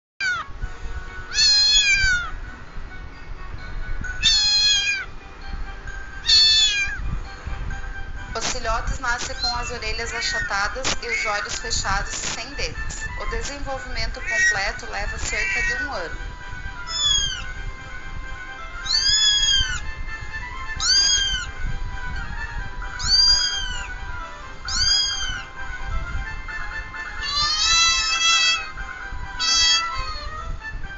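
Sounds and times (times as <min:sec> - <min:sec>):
cat meowing: 0:00.2 - 0:00.5, 0:01.3 - 0:02.4, 0:04.2 - 0:05.1, 0:06.2 - 0:07.0, 0:14.2 - 0:14.6, 0:15.2 - 0:15.8, 0:16.9 - 0:17.4, 0:18.8 - 0:19.8, 0:20.8 - 0:21.5, 0:23.0 - 0:24.0, 0:24.7 - 0:25.5, 0:27.2 - 0:28.8, 0:29.4 - 0:30.4.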